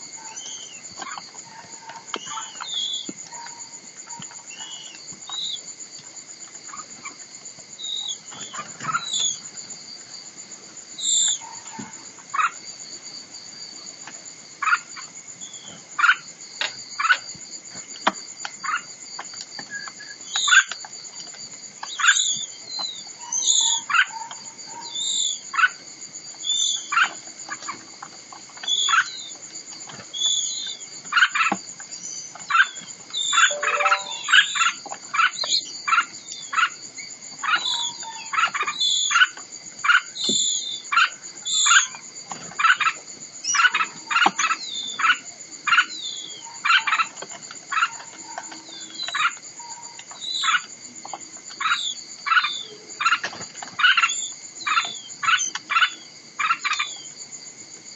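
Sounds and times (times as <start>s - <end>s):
high insect trill: 0.0s - 57.9s
short sharp bird calls: 33.4s - 34.5s.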